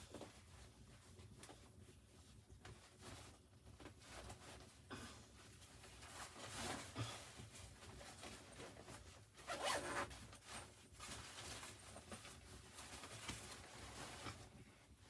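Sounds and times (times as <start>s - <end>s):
zipper rasping: 9.5s - 10.1s.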